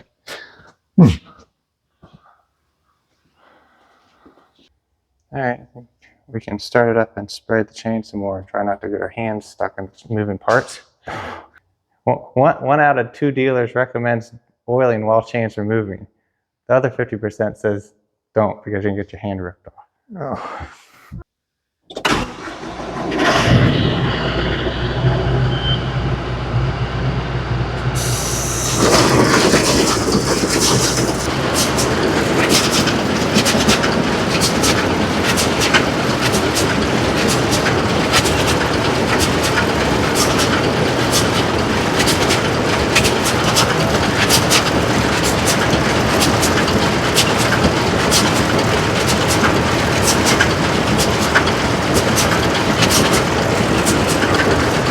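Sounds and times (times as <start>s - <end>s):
tractor engine running: 22.0s - 54.9s
baler chains and rollers rattling: 27.8s - 54.9s.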